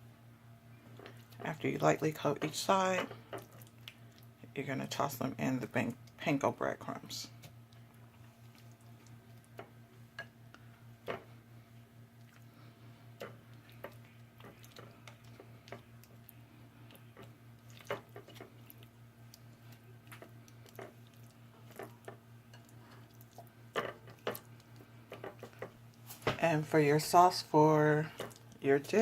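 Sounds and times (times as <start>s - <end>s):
breadcrumbs clicking and crackling: 12.2s - 26.2s.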